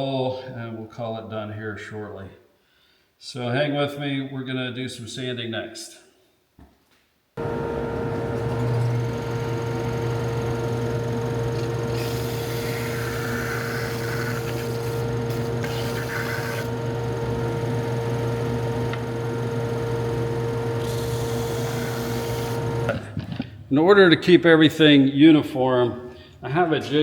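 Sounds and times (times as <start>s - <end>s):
power sander humming: 7.4s - 23.1s
hiss of sanding wood: 11.9s - 16.7s.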